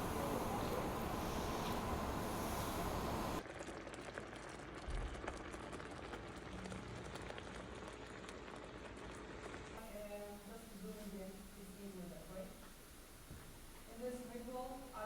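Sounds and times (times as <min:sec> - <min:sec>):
loud noise: 0:00.0 - 0:03.4
rain falling: 0:00.0 - 0:03.4.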